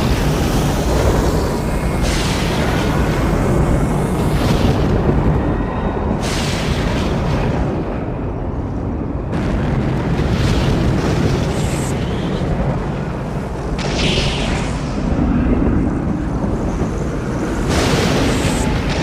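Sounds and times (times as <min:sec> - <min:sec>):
low tornado roar: 0:00.0 - 0:19.0
thunder cracks: 0:09.3 - 0:19.0.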